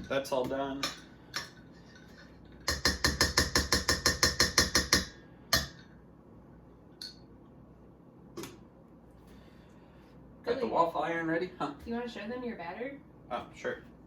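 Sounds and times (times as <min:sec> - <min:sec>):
fast sharp knocks: 0:02.7 - 0:05.1.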